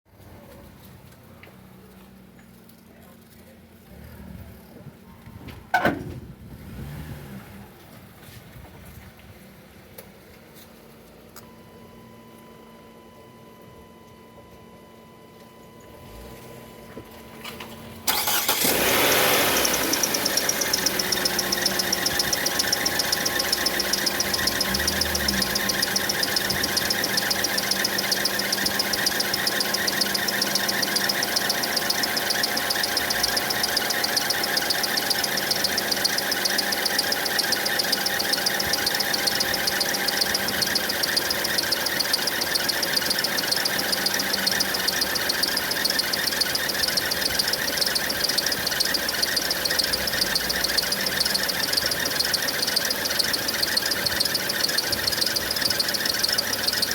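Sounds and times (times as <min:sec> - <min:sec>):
car engine starting and idling: 0:15.9 - 0:56.9
high-pitched belt chirping: 0:19.3 - 0:56.9.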